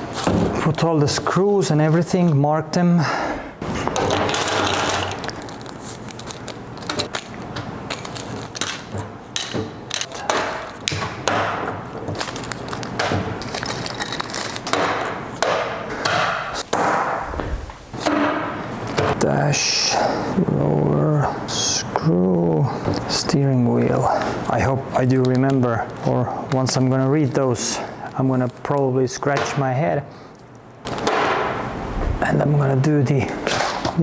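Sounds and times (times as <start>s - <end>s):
plastic bags rustling: 3.6s - 7.2s, 12.0s - 15.4s
small metal parts clinking: 4.0s - 10.8s, 12.2s - 14.7s.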